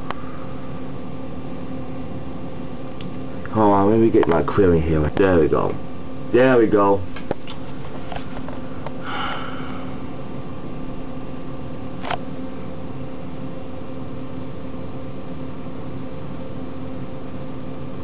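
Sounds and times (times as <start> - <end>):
machine hum with fan noise: 0.0 - 18.0
sharp click: 12.0 - 12.2.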